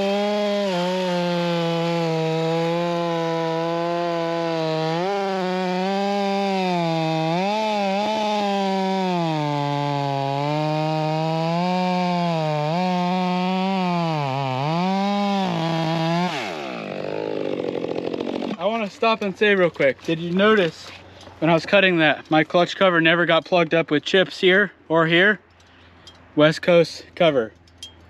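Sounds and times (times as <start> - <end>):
chainsaw cutting a log: 0.0 - 21.6.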